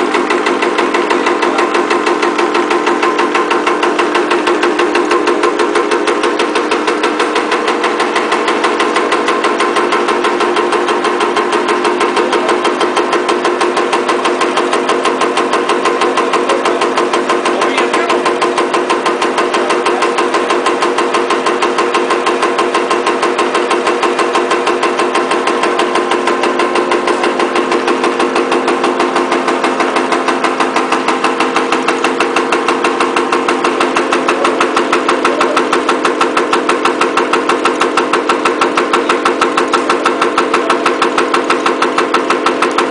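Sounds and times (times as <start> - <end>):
power press stamping rapidly: 0.0 - 42.9.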